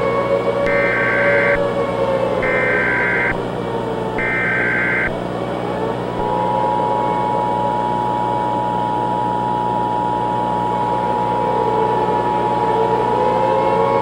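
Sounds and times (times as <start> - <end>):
lower wavering tone: 0.0 - 14.0
tape hiss: 0.6 - 5.4, 6.1 - 11.6
low hum: 0.6 - 12.2
two steady attention tones: 0.7 - 1.8, 2.4 - 3.5, 4.2 - 5.2.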